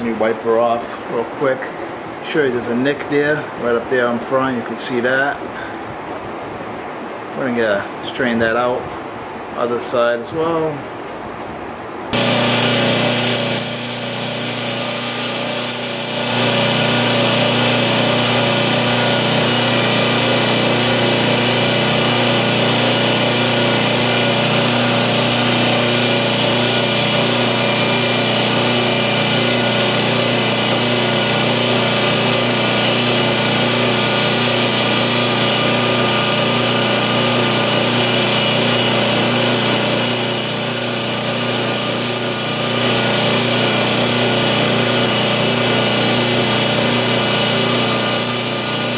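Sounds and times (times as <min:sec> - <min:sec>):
knife grinding hiss: 0:12.2 - 0:17.8, 0:38.0 - 0:43.0, 0:47.7 - 0:48.9
belt grinder motor hum: 0:12.2 - 0:48.9.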